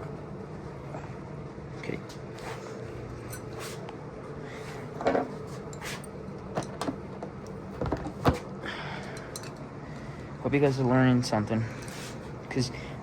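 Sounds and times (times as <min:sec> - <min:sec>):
steady low hum: 0:00.0 - 0:13.0
parts and tools clunking: 0:05.0 - 0:05.8, 0:06.4 - 0:09.6.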